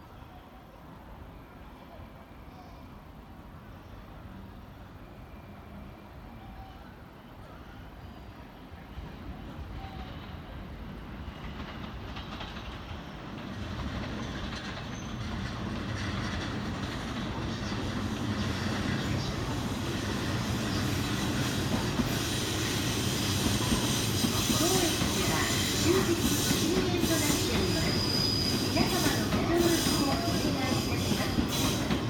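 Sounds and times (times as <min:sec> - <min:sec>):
electric train approaching: 0:09.4 - 0:32.0.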